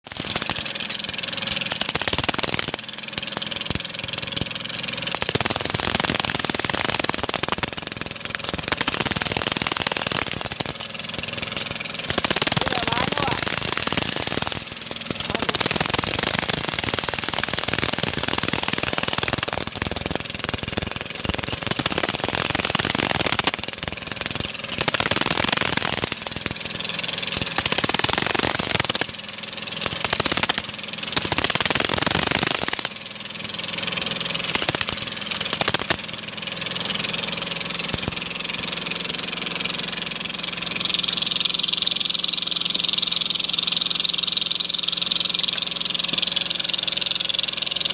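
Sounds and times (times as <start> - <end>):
engine running roughly: 10.8 - 19.3, 35.9 - 47.9.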